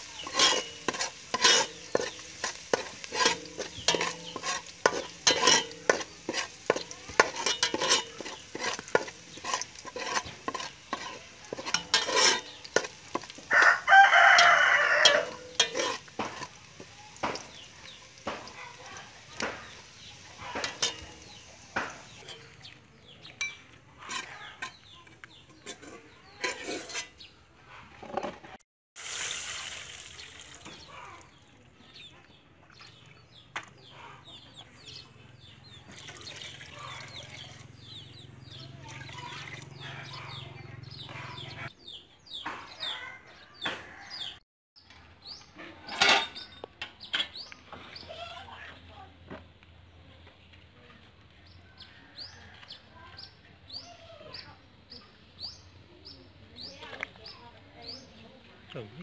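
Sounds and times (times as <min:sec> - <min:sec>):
chickens clucking and chirping: 0:32.0 - 0:44.4.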